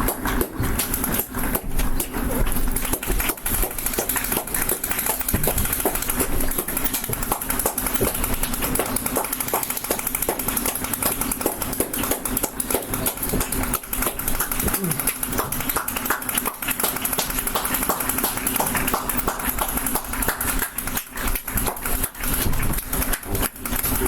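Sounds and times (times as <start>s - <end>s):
crowd clapping: 0.0s - 24.0s.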